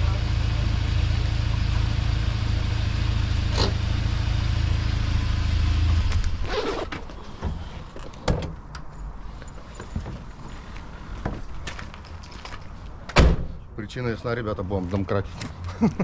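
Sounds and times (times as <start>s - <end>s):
engine running low rumble: 0.0s - 8.2s.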